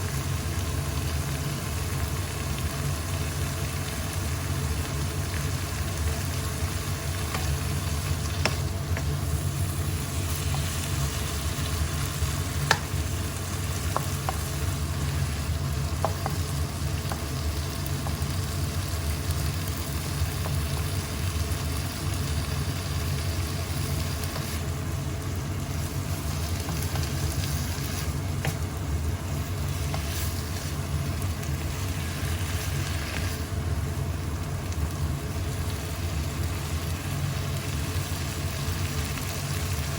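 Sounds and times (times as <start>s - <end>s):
food sizzling in a pan: 0.0s - 39.9s
steady low hum: 0.0s - 39.9s
utensil clicking against pan: 12.6s - 13.0s.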